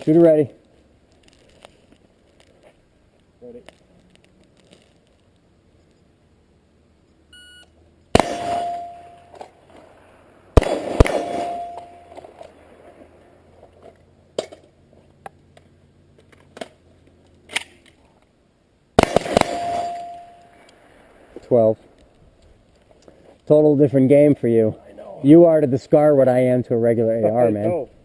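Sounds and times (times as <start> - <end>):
rifle shots: 8.1 - 9.4, 10.6 - 12.3, 19.0 - 20.6
steel plate ringing: 8.2 - 9.4, 11.0 - 12.3, 19.4 - 20.6.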